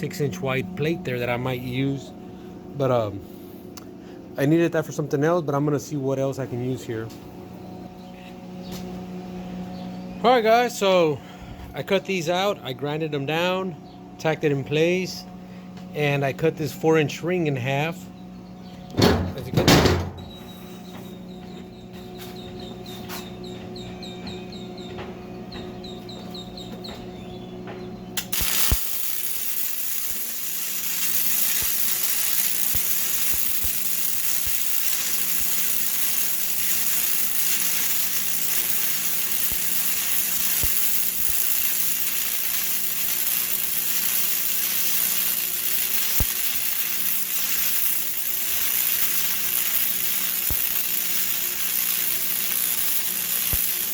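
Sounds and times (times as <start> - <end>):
low electrical hum: 0.0 - 53.9
arc welding crackling sizzle: 28.2 - 53.9.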